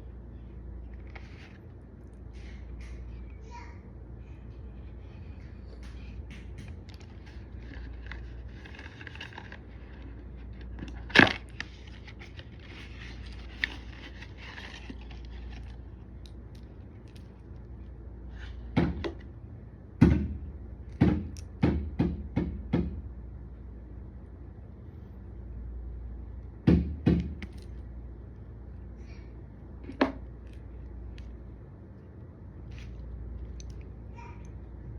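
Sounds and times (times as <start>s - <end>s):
packaging rustling: 6.7s - 17.3s.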